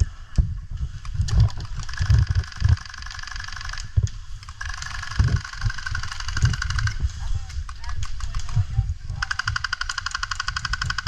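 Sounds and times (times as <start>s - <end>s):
low thumps and rustling: 0.0s - 2.8s
airsoft guns firing rapidly: 1.6s - 3.8s, 4.5s - 7.0s, 9.2s - 11.0s.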